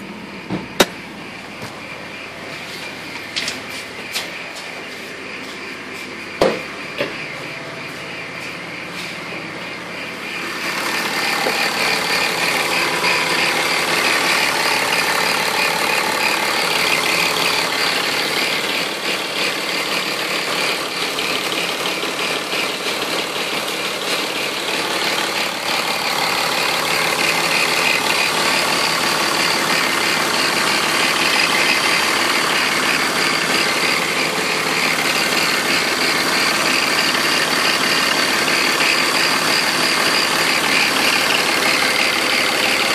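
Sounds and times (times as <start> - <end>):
high-pitched whine: 0.0 - 22.8
car engine idling: 0.0 - 42.9.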